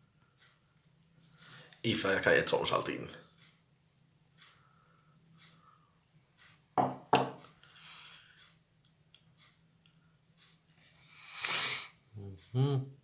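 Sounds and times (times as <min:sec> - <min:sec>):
sharp knocks of dishes: 0:06.8 - 0:07.5.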